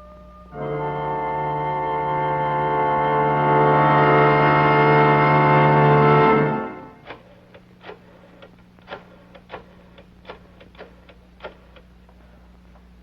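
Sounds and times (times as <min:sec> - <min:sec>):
faint steady hum: 0:00.0 - 0:13.0
clock ticking: 0:07.0 - 0:11.9.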